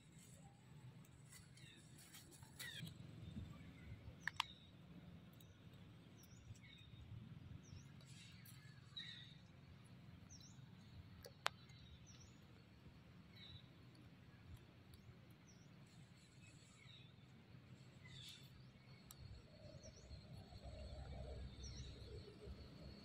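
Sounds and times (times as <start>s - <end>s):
low background hum: 0.0s - 23.0s
sharp clicks: 4.1s - 6.6s.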